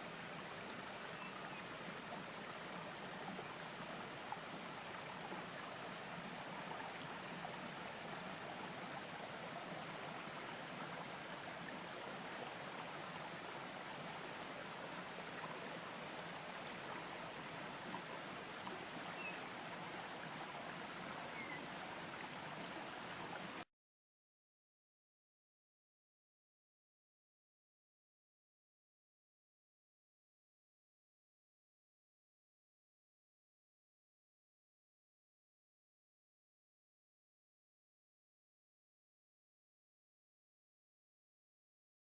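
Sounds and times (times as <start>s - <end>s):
river water rushing: 1.8s - 23.6s.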